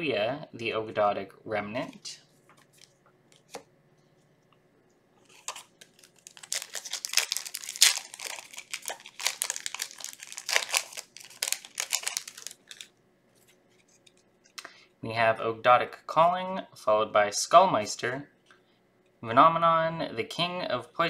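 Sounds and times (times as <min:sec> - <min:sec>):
foil wrapper crinkling and tearing: 0:05.2 - 0:12.9.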